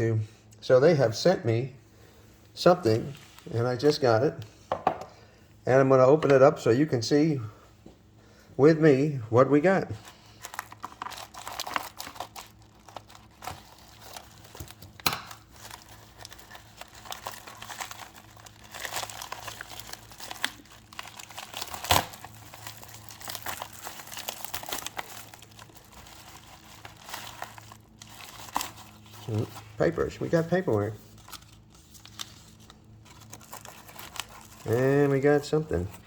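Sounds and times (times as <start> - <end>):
paper crinkling and tearing: 10.0 - 36.0.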